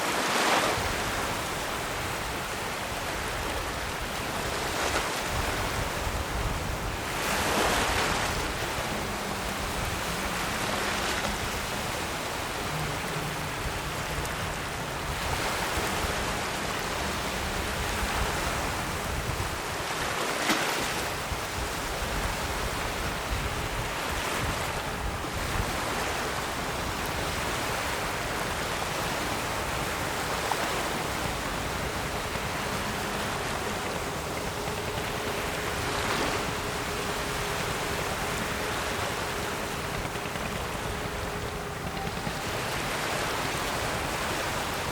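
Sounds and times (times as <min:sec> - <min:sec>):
ocean waves breaking: 0:00.0 - 0:44.9.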